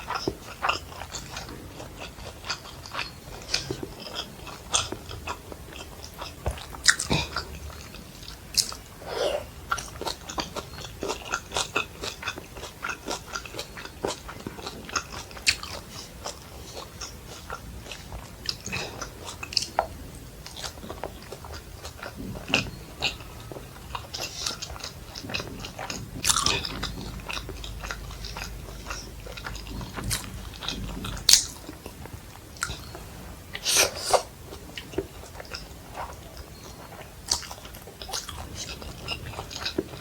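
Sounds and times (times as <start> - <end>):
person chewing food: 0.0 - 40.0.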